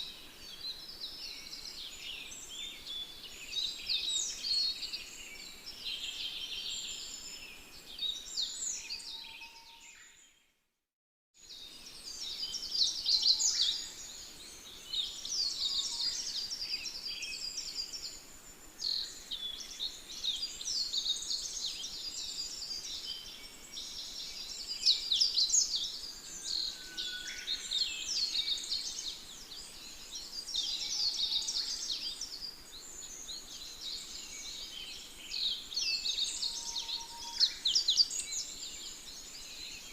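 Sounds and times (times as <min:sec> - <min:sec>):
chorus of birds chirping: 0:11.5 - 0:39.9.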